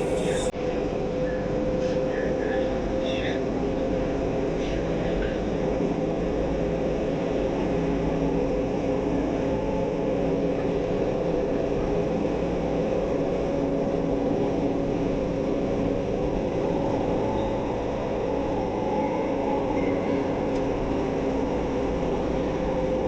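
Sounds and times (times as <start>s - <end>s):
motor hum: 0.0s - 0.5s
train car rumble: 0.0s - 0.5s.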